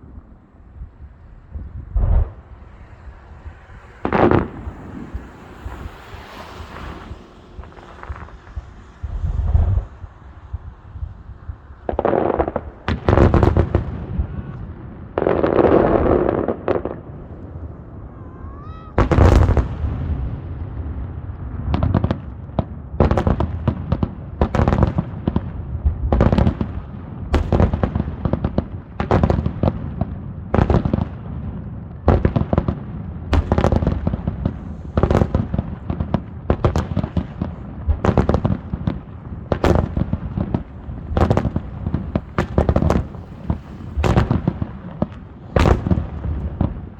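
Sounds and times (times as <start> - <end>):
rising firework whistle: 2.1 - 12.0, 17.4 - 20.6, 39.6 - 46.9
firework shells bursting: 33.4 - 46.9.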